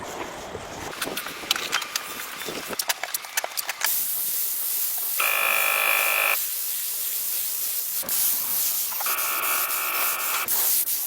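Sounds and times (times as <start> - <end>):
loud steady hiss: 3.9 - 11.0.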